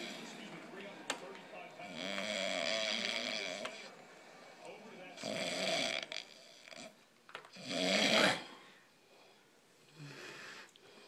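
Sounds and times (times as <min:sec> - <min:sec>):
person snoring: 0:01.9 - 0:03.9, 0:05.2 - 0:07.0, 0:07.6 - 0:08.6.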